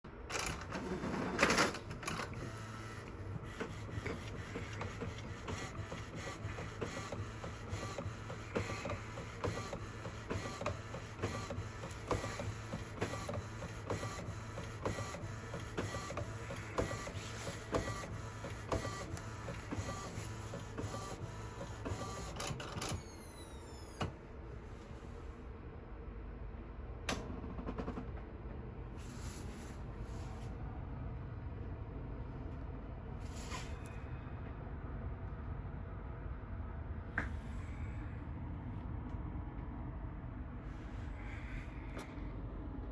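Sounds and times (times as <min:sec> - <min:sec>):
printer hum: 0:00.1 - 0:42.9
printer clunk: 0:00.3 - 0:02.9.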